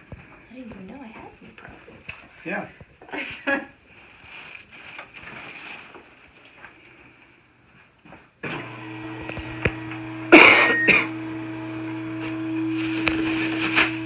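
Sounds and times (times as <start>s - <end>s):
person clearing throat: 10.3s - 11.2s.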